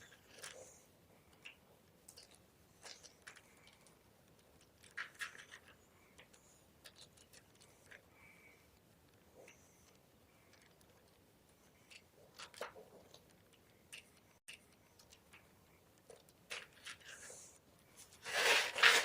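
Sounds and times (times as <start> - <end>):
chalk being crunched: 17.9 - 19.0.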